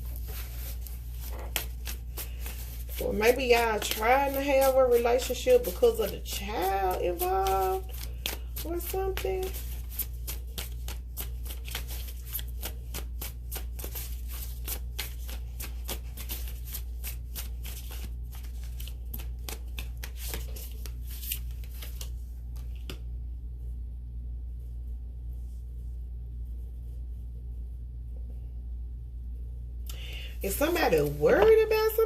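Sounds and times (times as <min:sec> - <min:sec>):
cards being shuffled: 0:00.0 - 0:23.0, 0:30.4 - 0:32.0.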